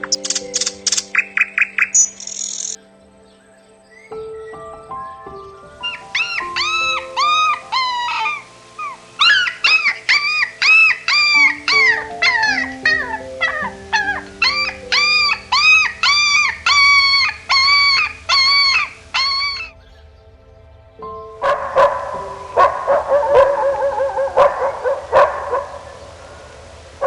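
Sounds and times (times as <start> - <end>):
background music: 0.0 - 27.0
dog yelping: 5.8 - 19.7, 21.4 - 25.8.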